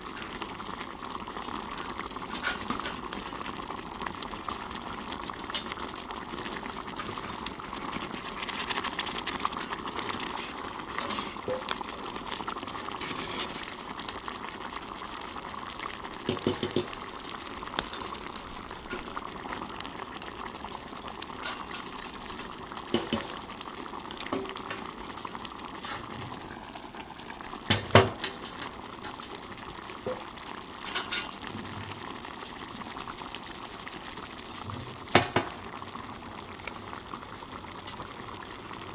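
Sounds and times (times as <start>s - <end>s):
food simmering in a pan: 0.0s - 38.9s
metal knocking against pan: 16.3s - 17.0s, 22.9s - 23.3s.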